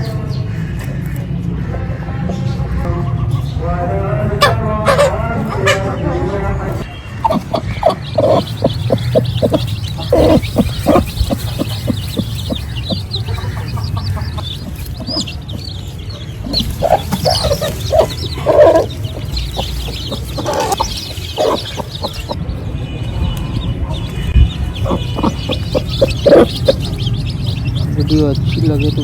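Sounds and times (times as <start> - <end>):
chickens clucking: 4.4 - 6.1, 6.7 - 22.5, 23.8 - 29.0
steady low hum: 7.1 - 22.4.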